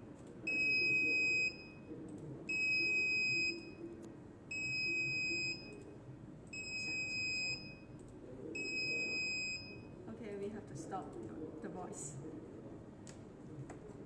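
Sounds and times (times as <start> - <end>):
high buzzer alarm beeps: 8.6 - 9.9.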